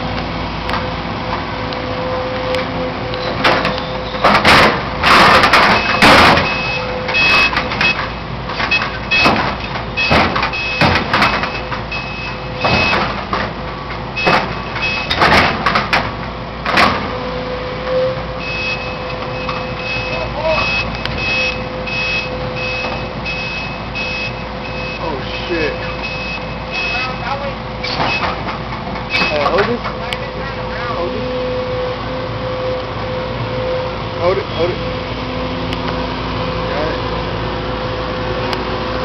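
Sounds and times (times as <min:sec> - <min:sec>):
heavy demolition machinery running: 0:00.0 - 0:39.0
reversing alarm beeping: 0:05.1 - 0:13.2, 0:14.1 - 0:15.4, 0:17.4 - 0:28.4, 0:29.1 - 0:29.7.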